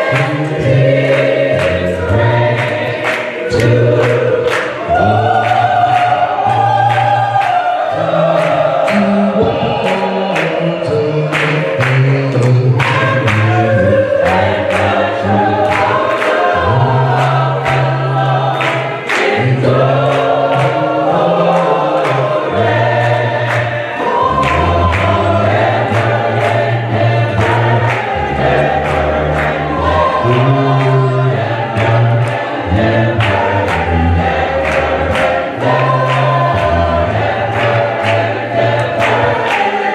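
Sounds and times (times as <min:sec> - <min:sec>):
gospel choir singing: 0:00.0 - 0:39.9
steady percussive beat: 0:00.0 - 0:39.9
heavy bass line: 0:19.4 - 0:39.4.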